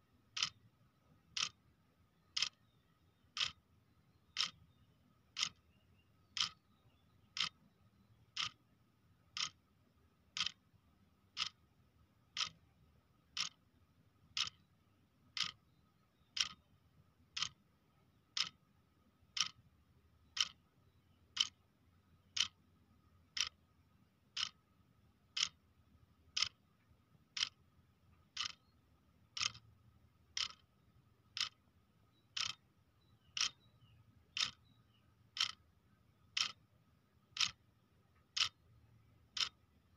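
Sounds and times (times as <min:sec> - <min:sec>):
clock ticking: 0:00.3 - 0:00.6, 0:01.3 - 0:01.6, 0:02.3 - 0:02.6, 0:03.4 - 0:03.6, 0:04.3 - 0:04.6, 0:05.3 - 0:05.6, 0:06.3 - 0:06.6, 0:07.3 - 0:07.6, 0:08.3 - 0:08.6, 0:09.3 - 0:09.7, 0:10.3 - 0:12.6, 0:13.2 - 0:13.7, 0:14.3 - 0:14.7, 0:15.3 - 0:15.6, 0:16.3 - 0:16.7, 0:17.3 - 0:17.6, 0:18.3 - 0:18.7, 0:19.3 - 0:20.7, 0:21.3 - 0:22.6, 0:23.2 - 0:23.7, 0:24.3 - 0:31.7, 0:32.4 - 0:33.7, 0:34.3 - 0:35.7, 0:36.3 - 0:39.9.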